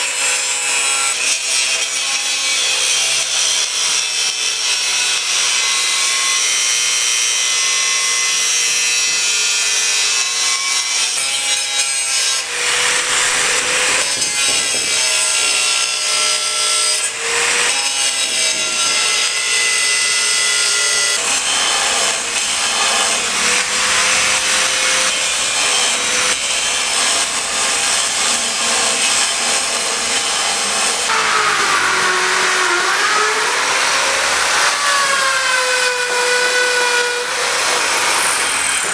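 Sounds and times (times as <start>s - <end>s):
rasping cutting noise: 7.8s - 38.9s
power tool motor whine: 12.4s - 38.9s.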